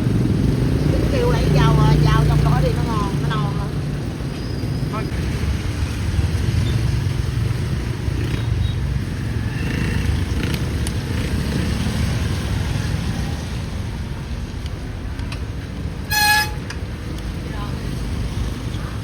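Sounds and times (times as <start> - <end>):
motorbike engines running: 0.0 - 19.0
rain hissing on street: 4.9 - 8.1.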